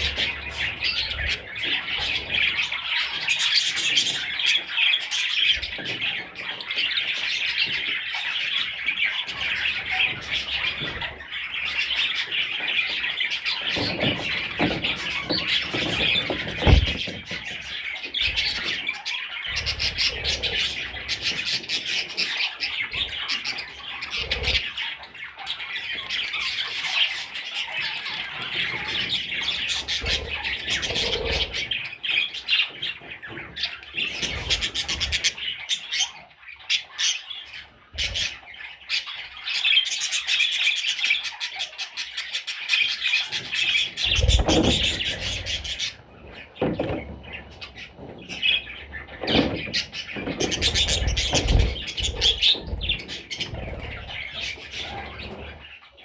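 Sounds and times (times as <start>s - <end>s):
budgerigar chicks squawking: 0.0s - 56.0s
low thump: 16.3s - 17.3s.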